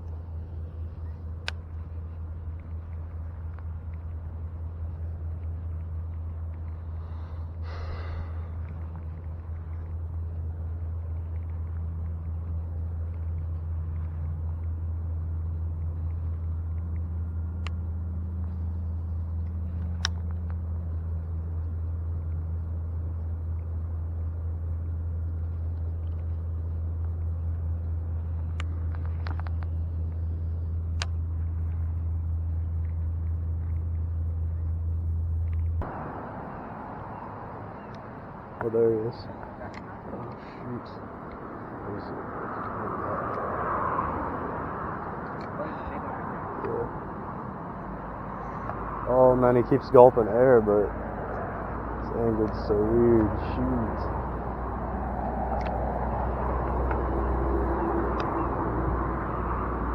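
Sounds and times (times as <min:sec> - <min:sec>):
car driving rumble: 0:00.0 - 0:59.9
sharp clicks: 0:55.4 - 0:59.3.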